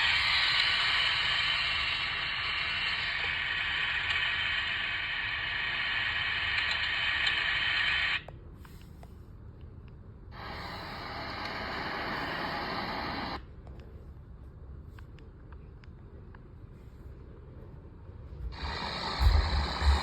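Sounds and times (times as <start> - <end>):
heavy rain hiss: 18.5 - 20.0.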